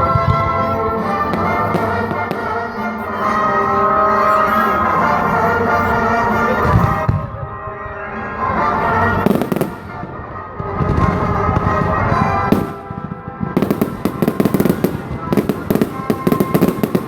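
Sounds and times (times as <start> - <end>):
music: 0.0 - 17.0
fireworks booming: 9.2 - 17.0
firework sharp crack: 12.4 - 17.0.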